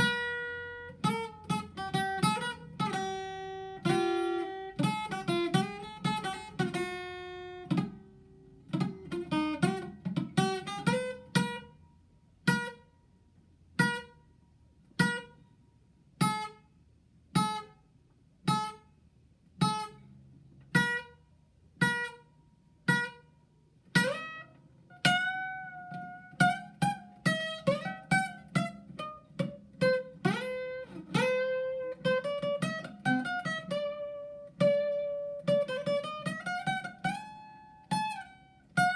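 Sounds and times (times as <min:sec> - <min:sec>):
acoustic guitar picking: 0:00.0 - 0:11.8, 0:12.4 - 0:12.9, 0:13.8 - 0:14.2, 0:15.0 - 0:15.4, 0:20.7 - 0:21.2, 0:21.8 - 0:23.3, 0:23.9 - 0:38.9.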